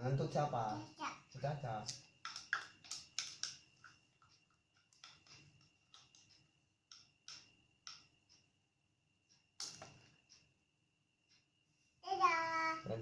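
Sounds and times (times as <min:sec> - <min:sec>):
plastic toy pieces clicking: 0:01.9 - 0:03.6.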